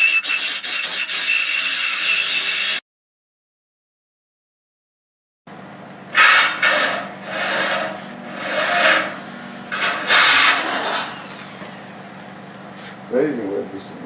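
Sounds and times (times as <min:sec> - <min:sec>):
rasping scrapes on metal: 0:06.2 - 0:11.4.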